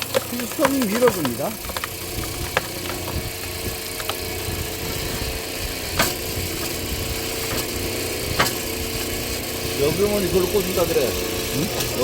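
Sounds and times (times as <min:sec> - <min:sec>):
wood splitting cracks: 0:00.0 - 0:04.4, 0:05.4 - 0:06.8, 0:07.4 - 0:09.1
electric motor and pump running: 0:00.0 - 0:12.0.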